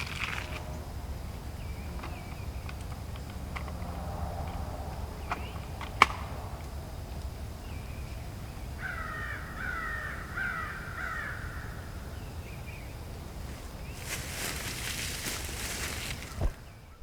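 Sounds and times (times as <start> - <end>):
low outdoor rumble: 0.0 - 17.0
crow cawing: 8.8 - 12.2.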